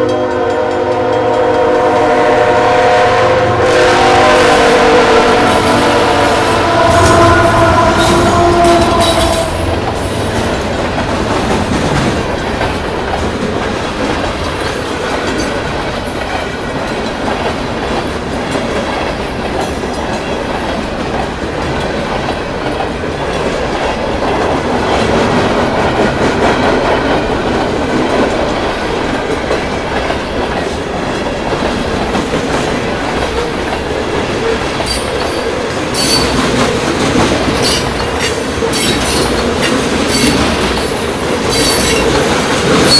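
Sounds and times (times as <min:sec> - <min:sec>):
locomotive horn: 0:00.0 - 0:10.7
freight train rumble: 0:00.0 - 0:42.9
wheels clacking over rail joints: 0:05.0 - 0:42.9
wheel squeal: 0:34.9 - 0:36.6, 0:37.6 - 0:42.9.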